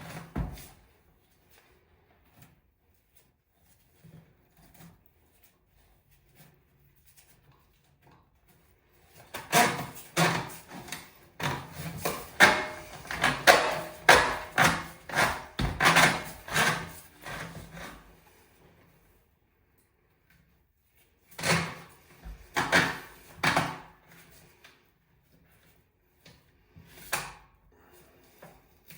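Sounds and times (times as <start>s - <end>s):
hand saw cutting: 9.4s - 18.1s.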